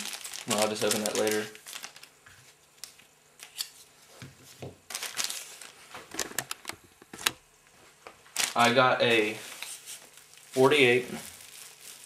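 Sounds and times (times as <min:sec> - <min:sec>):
packaging crinkling: 0:00.0 - 0:03.8, 0:04.9 - 0:06.7, 0:08.2 - 0:12.0.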